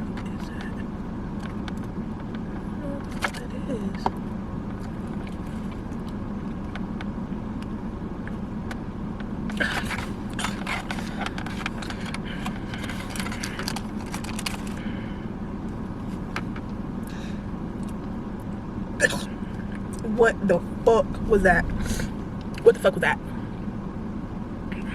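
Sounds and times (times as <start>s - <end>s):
car cabin hum: 0.0s - 24.9s
crinkling and rustling: 9.5s - 14.8s.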